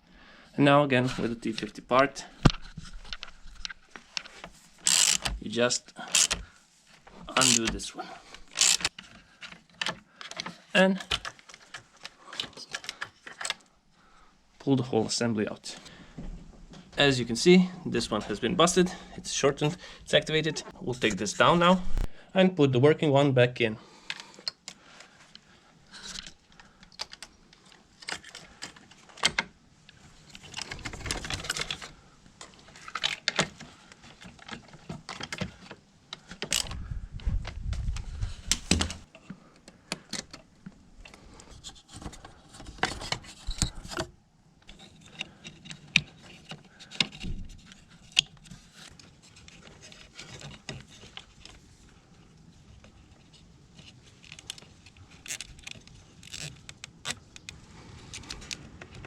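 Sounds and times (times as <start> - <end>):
hand tools and parts clicking: 2.4 - 5.4, 6.0 - 6.5, 7.2 - 13.7, 24.0 - 36.8.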